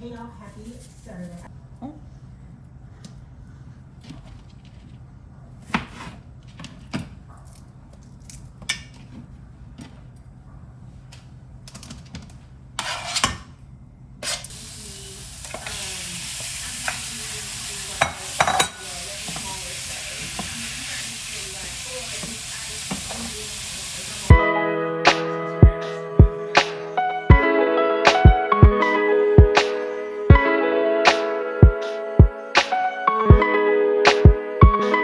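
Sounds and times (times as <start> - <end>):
utensils and dishes clinking: 14.3 - 24.3
food sizzling in a pan: 14.5 - 24.3.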